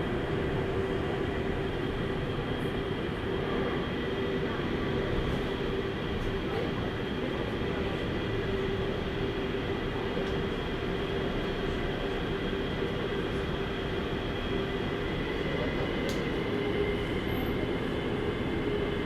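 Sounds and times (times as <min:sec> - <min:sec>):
brief click: 0:16.0 - 0:16.3.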